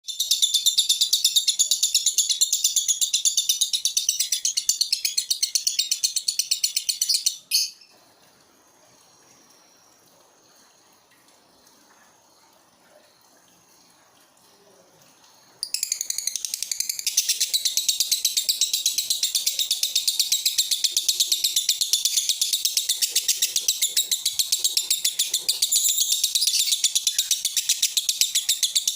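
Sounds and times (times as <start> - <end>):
lovebird chattering chirps: 0.1 - 7.9, 15.6 - 28.9.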